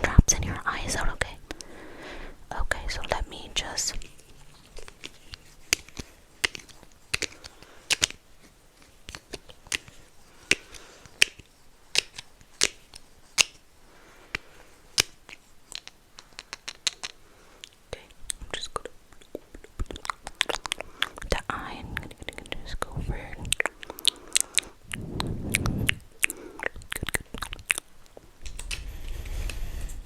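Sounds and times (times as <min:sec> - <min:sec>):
small props clicking and tapping: 0:04.8 - 0:08.2, 0:08.8 - 0:13.6, 0:15.0 - 0:21.4.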